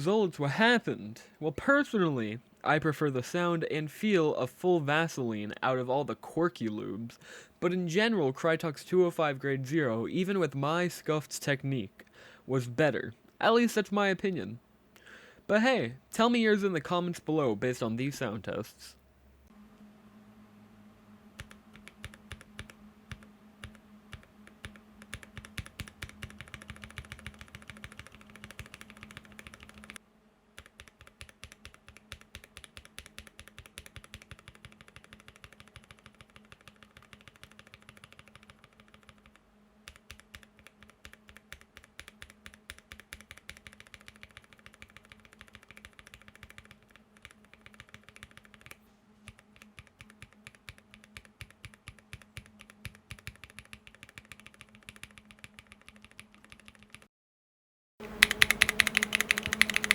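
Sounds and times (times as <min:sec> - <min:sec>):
mechanical keyboard typing: 0:21.4 - 0:30.0, 0:30.6 - 0:57.0, 0:58.0 - 0:59.9.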